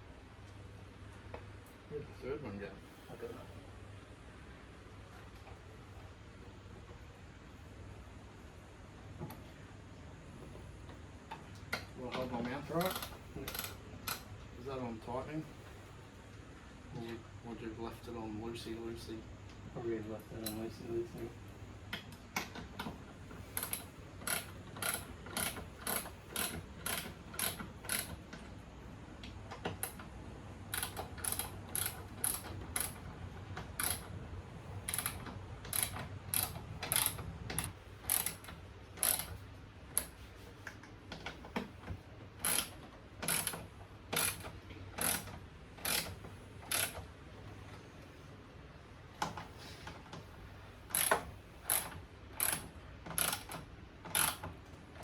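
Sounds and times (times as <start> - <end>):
ratchet clicking: 11.7 - 14.3, 22.0 - 28.4, 30.7 - 34.2, 34.8 - 40.2, 42.4 - 47.1, 50.9 - 54.6.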